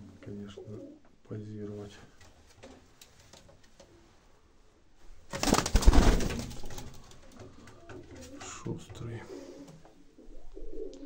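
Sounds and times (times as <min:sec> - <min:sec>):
pigeon wings flapping: 0:05.3 - 0:08.3
pigeons cooing: 0:06.9 - 0:08.6, 0:09.2 - 0:11.0.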